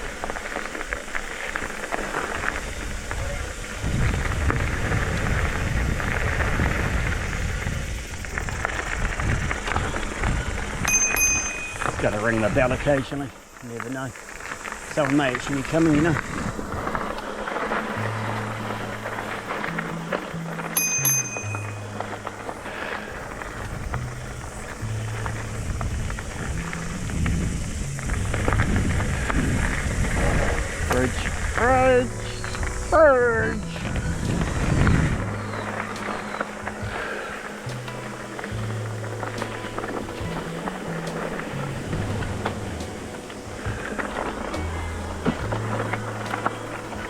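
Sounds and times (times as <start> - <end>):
bike clicks and rattles: 0.0 - 47.0
bike tyres rolling on dirt: 0.0 - 47.0
wind rumble on microphone: 0.0 - 47.0
background music: 14.8 - 47.0.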